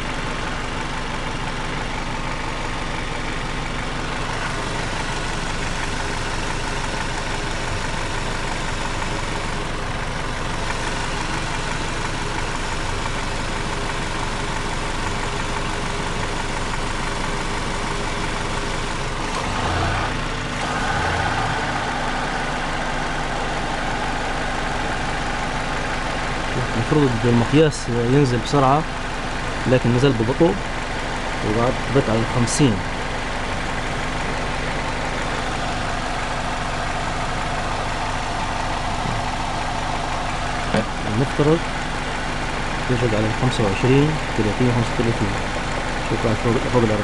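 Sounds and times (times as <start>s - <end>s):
air conditioning compressor running: 0.0s - 47.0s
car engine idling: 0.0s - 47.0s
higher hum: 20.1s - 27.3s.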